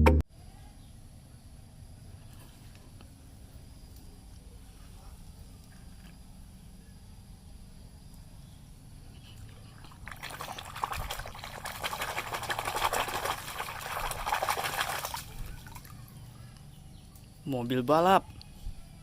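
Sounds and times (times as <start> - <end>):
water pouring and splashing: 9.8 - 16.2.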